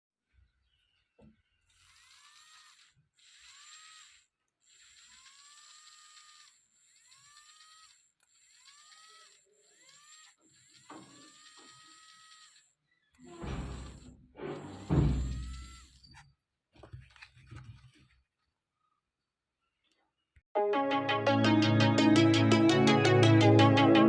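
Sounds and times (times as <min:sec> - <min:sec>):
toy car electric motor whir: 0:01.7 - 0:16.2.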